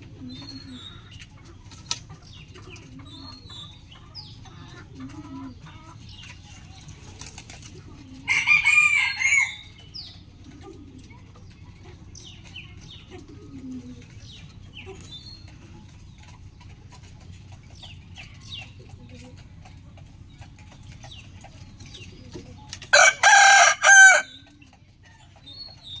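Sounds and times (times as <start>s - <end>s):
rooster crowing: 8.3s - 9.6s, 22.9s - 24.4s.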